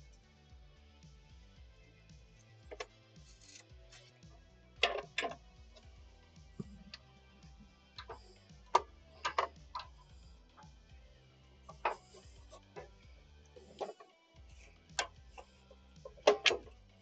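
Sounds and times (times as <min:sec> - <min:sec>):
faint background music: 0:00.0 - 0:17.0
ratchet clicking on metal: 0:02.7 - 0:04.2.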